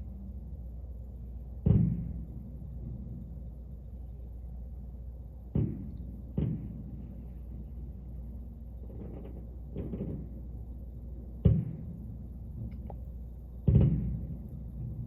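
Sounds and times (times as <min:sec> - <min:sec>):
distant fireworks booming: 0:01.6 - 0:03.8, 0:05.4 - 0:15.0.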